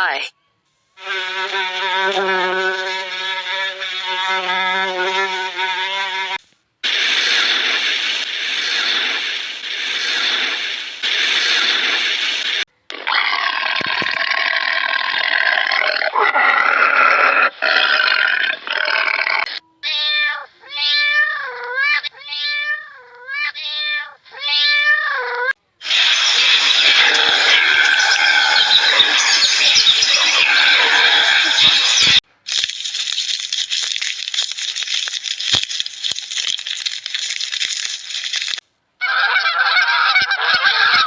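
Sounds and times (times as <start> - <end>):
harsh noisy animal calls: 13.0 - 19.5, 24.5 - 32.2, 36.4 - 41.0
cat meowing: 19.7 - 25.6.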